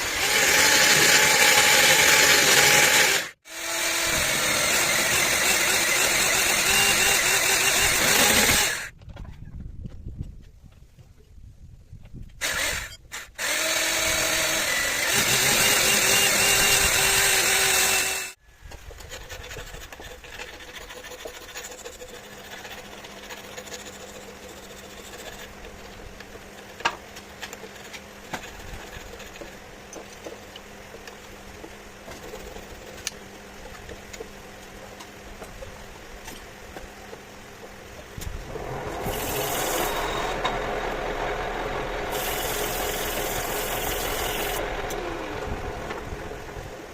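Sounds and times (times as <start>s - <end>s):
power tool running: 0.0s - 8.9s, 12.4s - 18.4s, 38.4s - 46.9s.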